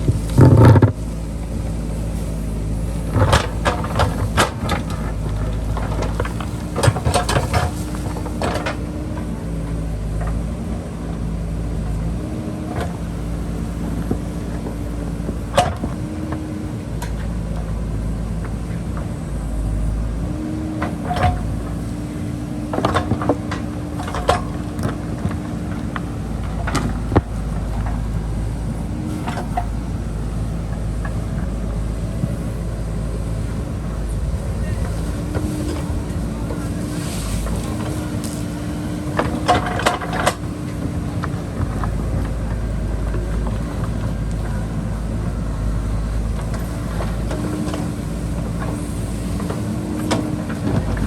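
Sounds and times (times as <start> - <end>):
digging clanks and knocks: 0.0 - 1.5, 2.9 - 9.4, 20.7 - 32.4, 33.4 - 44.8
diesel engine under load: 0.0 - 51.0.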